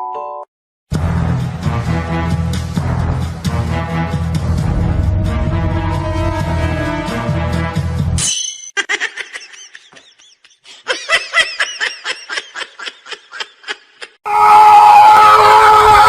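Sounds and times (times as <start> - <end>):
loud steady tone: 4.4 - 7.3
person giggling: 8.8 - 14.2.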